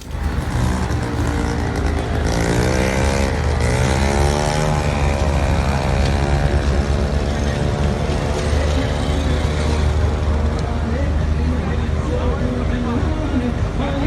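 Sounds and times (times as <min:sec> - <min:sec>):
vehicle engine running: 0:00.0 - 0:02.3.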